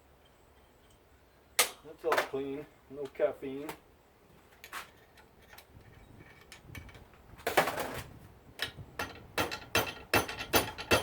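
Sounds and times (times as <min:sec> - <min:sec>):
metal parts clicking and knocking: 0:08.6 - 0:11.0.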